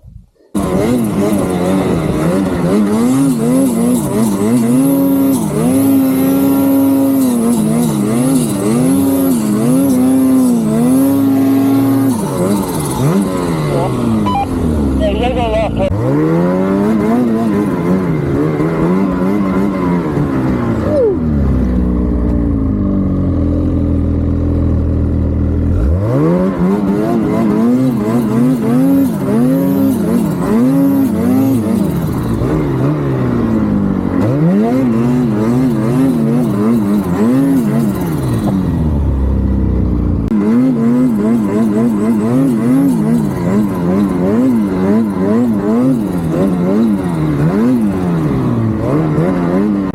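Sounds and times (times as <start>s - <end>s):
car engine revving: 0.6s - 49.9s
turbo whine: 14.2s - 15.9s.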